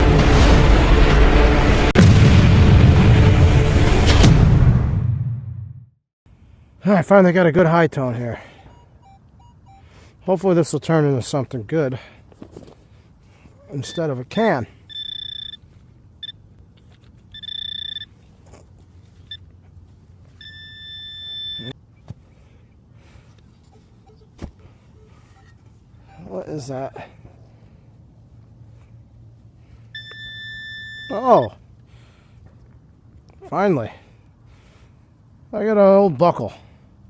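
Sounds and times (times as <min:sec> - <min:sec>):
deep booming rumble: 0:00.0 - 0:05.7
metal detector high-pitched tone: 0:08.7 - 0:09.8, 0:14.9 - 0:15.6, 0:17.3 - 0:18.2, 0:20.4 - 0:21.8, 0:25.0 - 0:26.5, 0:29.9 - 0:31.5.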